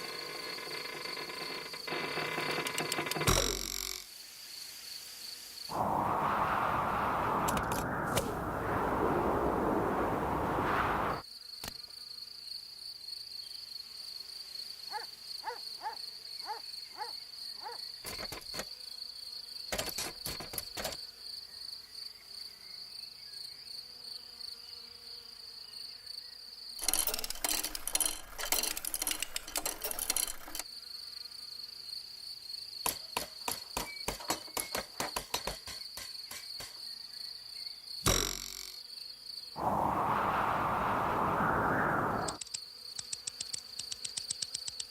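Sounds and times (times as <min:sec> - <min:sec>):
high-pitched insect trill: 0:00.0 - 0:02.6
rapid clicking and rattling: 0:26.8 - 0:30.6.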